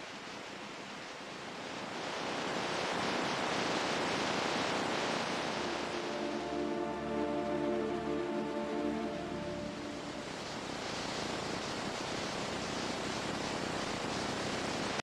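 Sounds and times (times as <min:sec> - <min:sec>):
wave breaking and washing in: 0:01.7 - 0:12.6
ocean surf rushing: 0:02.0 - 0:11.4.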